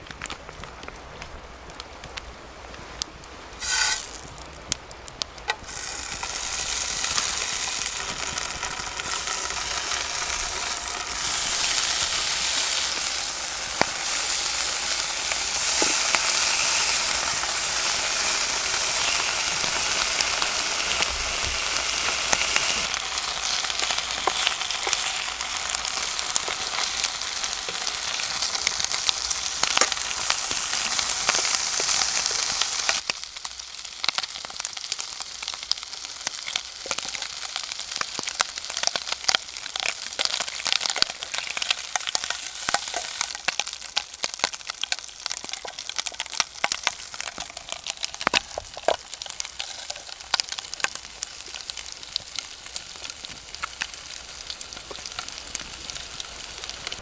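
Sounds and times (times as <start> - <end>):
sharp pops and crackles: 0.0 - 57.0
food sizzling in a frying pan: 3.6 - 4.7, 5.5 - 57.0.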